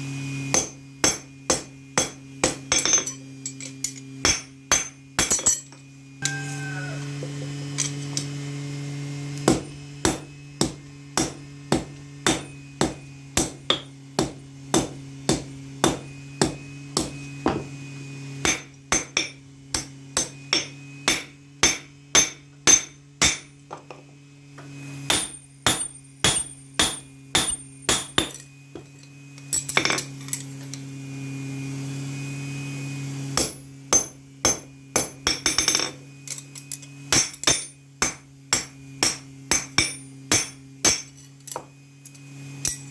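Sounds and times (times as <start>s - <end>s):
steady low hum: 0.0s - 42.9s
hammer ringing on anvil: 0.5s - 6.5s, 9.5s - 17.7s, 18.4s - 23.7s, 25.1s - 28.9s, 33.4s - 36.0s, 37.1s - 41.7s.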